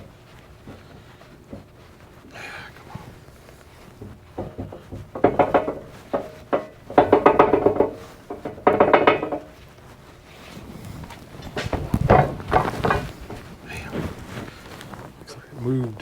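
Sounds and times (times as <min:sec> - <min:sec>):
steel parts clanking: 0:04.0 - 0:09.6.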